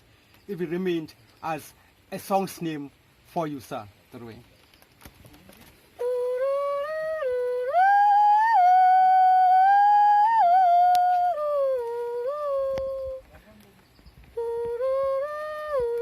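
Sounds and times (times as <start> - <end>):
woman humming high tune: 6.0 - 13.3, 14.0 - 16.0.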